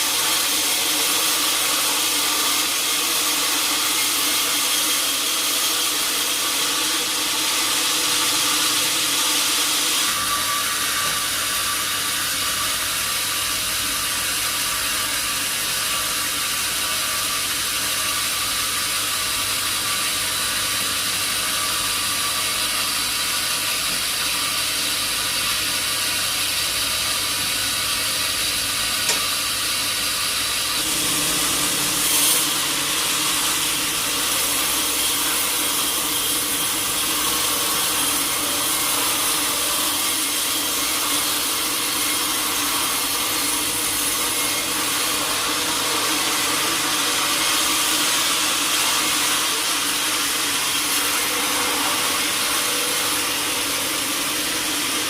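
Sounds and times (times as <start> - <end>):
sawmill machinery hissing: 0.0 - 55.0.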